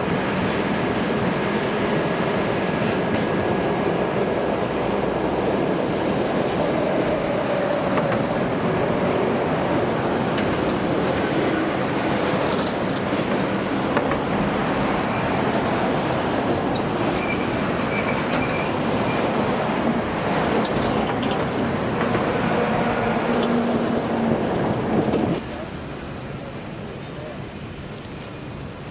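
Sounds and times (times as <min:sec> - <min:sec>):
freight train wheels on rails: 0:00.0 - 0:28.9
clicks over rail joints: 0:16.6 - 0:24.0.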